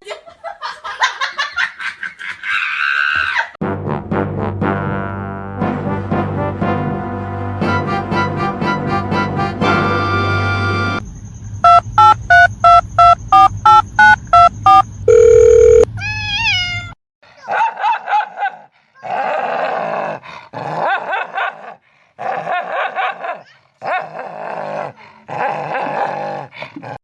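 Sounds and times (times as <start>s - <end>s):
electronic beeps at two pitches: 11.6s - 15.9s.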